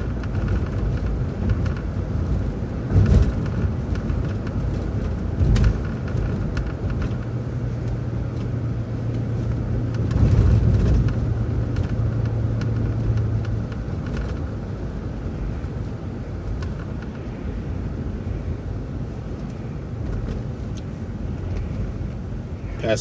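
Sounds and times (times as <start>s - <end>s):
rattles and knocks: 0.0s - 14.7s
bus engine hum: 0.0s - 23.0s
road rumble: 0.0s - 23.0s.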